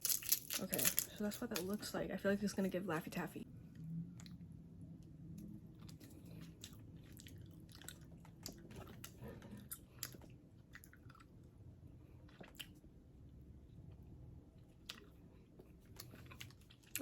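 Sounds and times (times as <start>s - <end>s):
person chewing candy: 5.6s - 11.6s, 12.2s - 12.8s, 14.6s - 17.0s.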